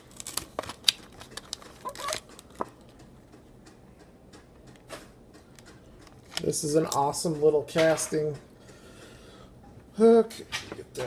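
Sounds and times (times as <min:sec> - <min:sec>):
plastic blister packaging crackling: 0:00.0 - 0:03.0.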